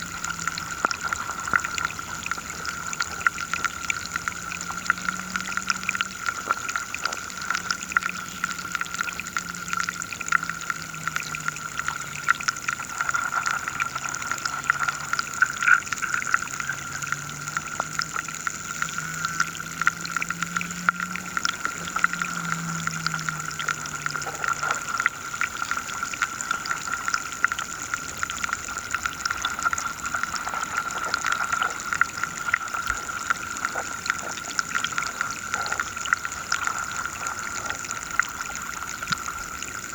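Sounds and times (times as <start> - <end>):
underwater crackling and clicking: 0.0 - 39.9.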